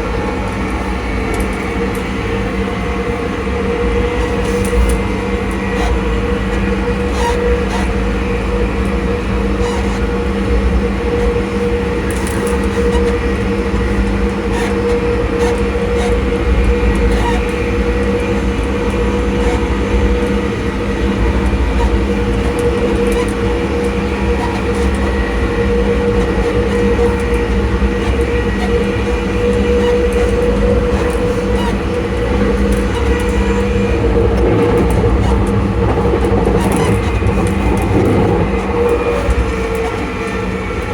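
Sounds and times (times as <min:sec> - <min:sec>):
train wheels rumbling on track: 0:00.0 - 0:40.9
train motors whining: 0:14.8 - 0:40.9.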